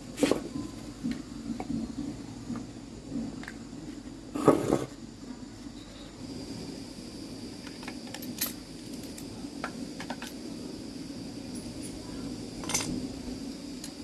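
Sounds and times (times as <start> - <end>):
faint high whine: 0.0 - 14.0
steady low hum: 0.0 - 14.0
metal parts and tools clinking: 12.6 - 13.0.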